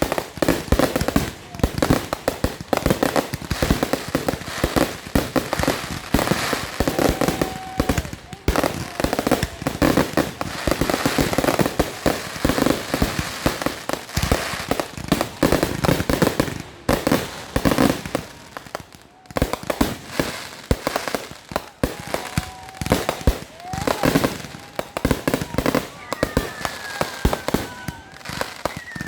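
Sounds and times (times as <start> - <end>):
fireworks bangs and crackling: 0.0 - 29.0.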